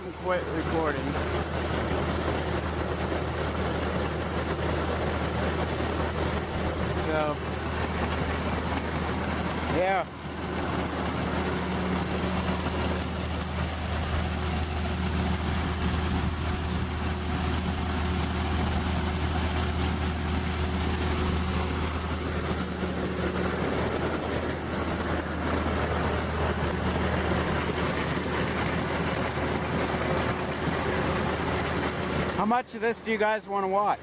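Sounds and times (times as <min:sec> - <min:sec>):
combine engine hum: 0:00.0 - 0:34.0.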